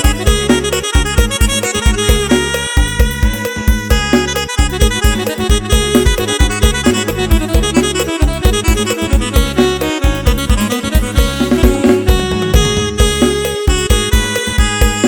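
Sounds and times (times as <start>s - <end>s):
electronic keyboard music: 0.0s - 15.0s.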